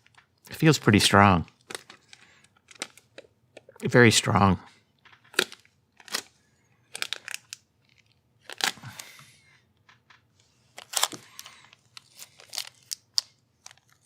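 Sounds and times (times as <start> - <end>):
packing tape crackling: 6.9 - 9.1, 10.8 - 14.0
tape rustling crinkles: 6.9 - 9.1, 10.6 - 14.0.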